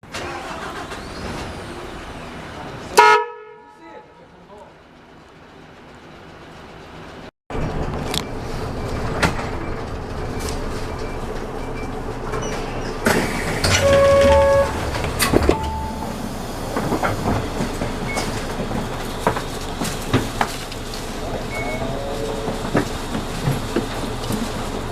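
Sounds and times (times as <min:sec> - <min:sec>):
bus idling: 0:00.0 - 0:24.9
short tones stepping down: 0:13.4 - 0:16.4.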